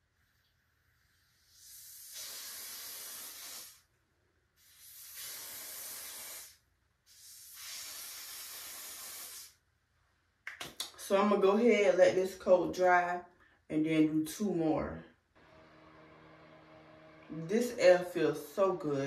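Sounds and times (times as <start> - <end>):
aerosol spray hissing: 1.4 - 3.9, 4.6 - 9.6.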